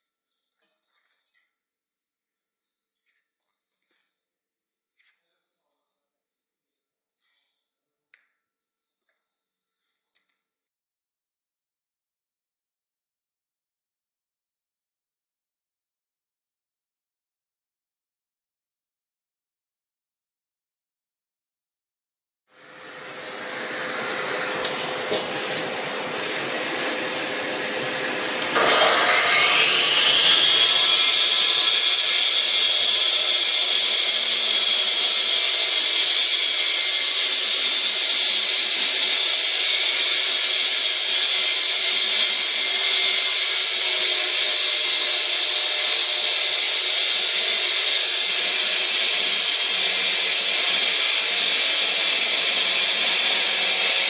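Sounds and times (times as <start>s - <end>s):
cut-off saw whining: 22.6s - 54.0s.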